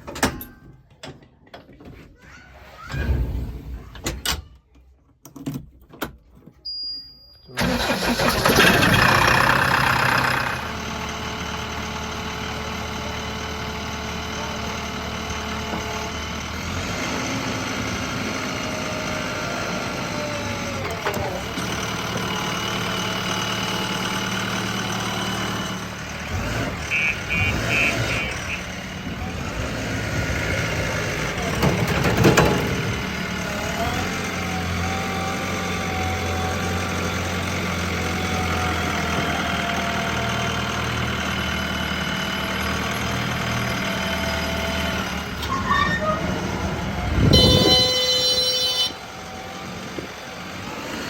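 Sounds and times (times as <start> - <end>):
diesel engine starting and running: 7.5 - 51.0.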